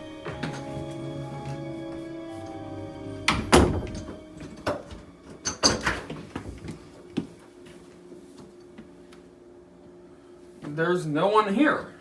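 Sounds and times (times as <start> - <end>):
doors and cupboards opening and shutting: 0.0 - 6.9.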